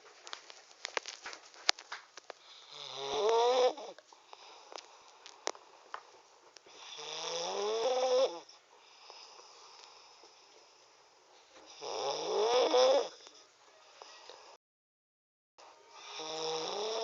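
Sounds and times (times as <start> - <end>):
loud snoring: 2.4 - 4.6, 6.7 - 10.2, 11.7 - 13.4, 16.0 - 17.0.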